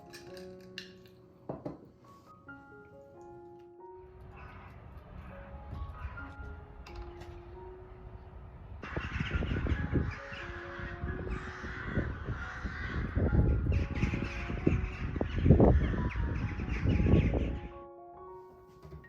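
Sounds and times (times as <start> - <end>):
soft background music: 0.0 - 19.0
crow-like cawing: 4.2 - 6.6, 8.8 - 16.6.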